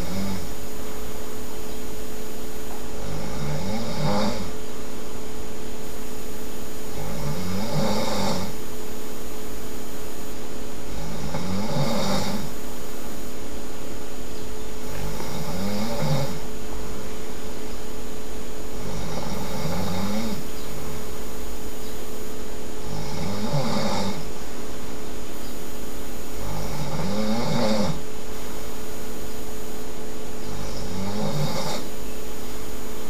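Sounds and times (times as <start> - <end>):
person snoring loudly: 0.0 - 0.6, 3.0 - 4.6, 6.9 - 8.6, 10.9 - 12.6, 14.9 - 16.4, 18.8 - 20.5, 22.8 - 24.3, 26.4 - 28.0, 30.4 - 31.9.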